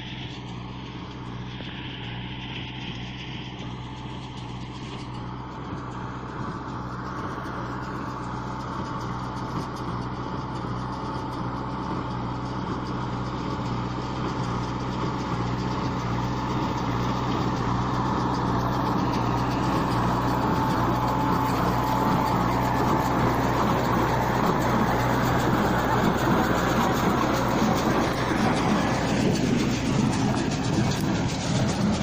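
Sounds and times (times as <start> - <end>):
harvester engine running: 0.0 - 32.0
thin constant whine: 13.0 - 32.0.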